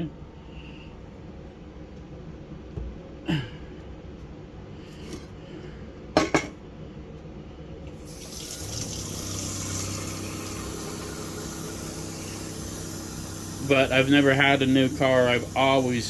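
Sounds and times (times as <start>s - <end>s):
water running from faucet: 8.0s - 16.0s.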